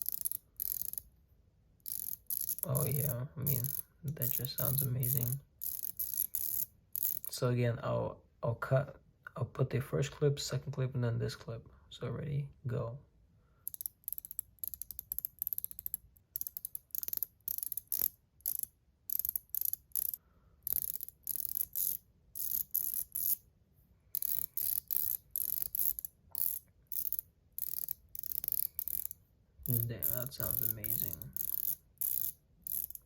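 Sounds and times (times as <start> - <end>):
ratchet ring clicking: 0.0 - 1.1, 1.8 - 7.3, 13.6 - 23.4, 24.1 - 33.0.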